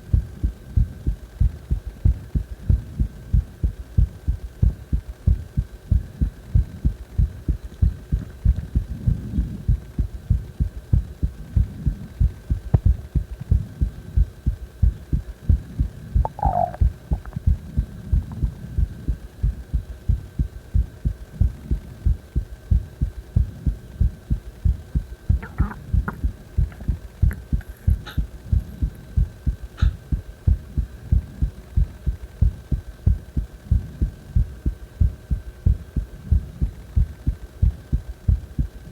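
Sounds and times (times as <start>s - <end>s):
heartbeat thumps: 0.0s - 38.8s
faint steady hum: 0.0s - 38.9s.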